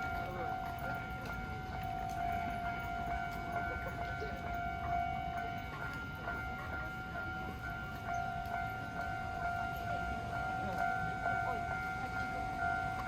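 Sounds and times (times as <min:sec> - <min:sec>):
level crossing warning bell: 0:00.0 - 0:13.0.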